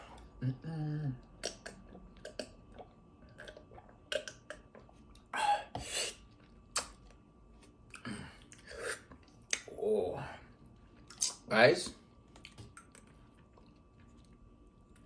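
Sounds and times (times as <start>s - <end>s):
person chewing: 1.3s - 9.8s, 10.8s - 11.4s, 12.3s - 15.0s.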